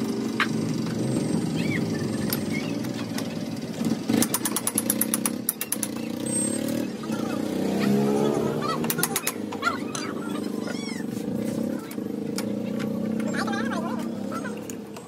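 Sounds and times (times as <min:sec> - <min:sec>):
motorcycle engine running: 0:00.0 - 0:15.0
rapid sharp clicking: 0:04.2 - 0:06.0.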